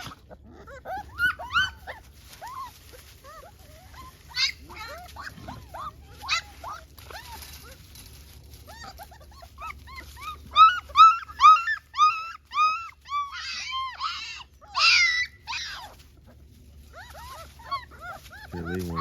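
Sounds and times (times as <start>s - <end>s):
puppies whimpering and yelping: 0.0s - 19.0s.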